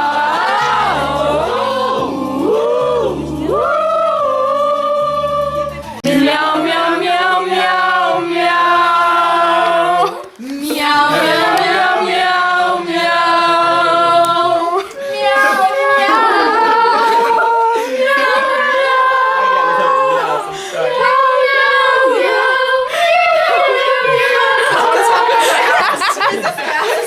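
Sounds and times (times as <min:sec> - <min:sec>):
low instrumental accompaniment: 0:00.0 - 0:09.0
group singing sustained notes: 0:00.0 - 0:27.0.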